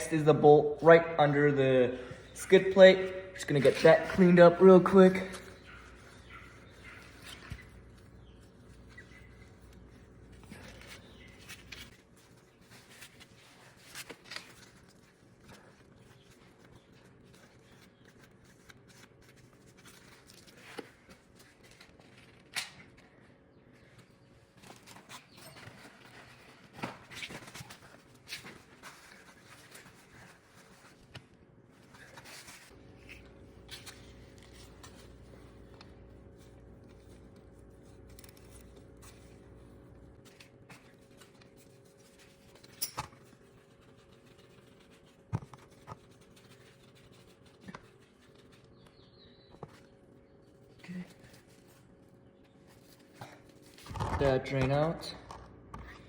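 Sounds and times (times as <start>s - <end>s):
low steady hum: 31.8s - 44.9s.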